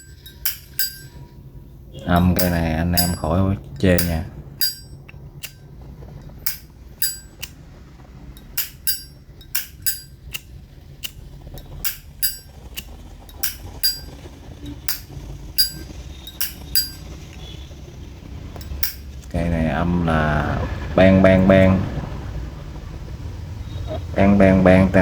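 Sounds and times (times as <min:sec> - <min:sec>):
lighter lid clicking: 0:08.4 - 0:11.2.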